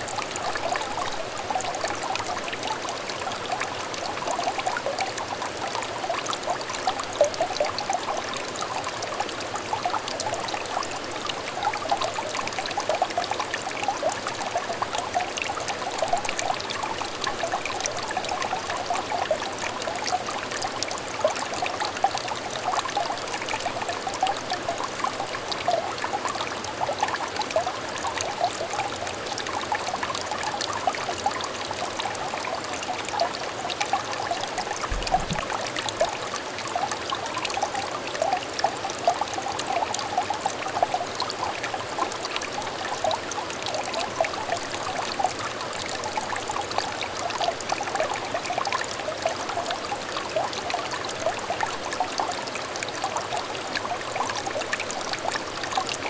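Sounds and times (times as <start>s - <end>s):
stream trickling over stones: 0.0s - 56.0s.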